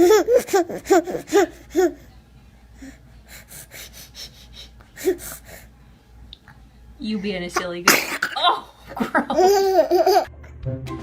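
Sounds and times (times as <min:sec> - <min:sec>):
baby giggling: 0:00.0 - 0:02.0, 0:08.1 - 0:10.3.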